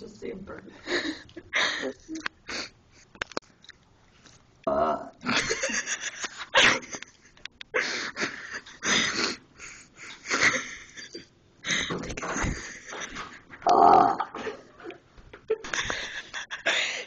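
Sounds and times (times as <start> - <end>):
person burping: 4.6 - 5.4, 13.6 - 14.5.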